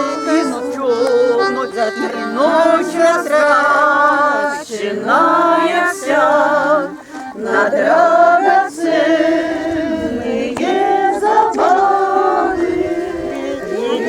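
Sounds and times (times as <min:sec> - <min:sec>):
music: 0:00.0 - 0:04.8, 0:08.7 - 0:14.0
person singing: 0:00.0 - 0:14.0.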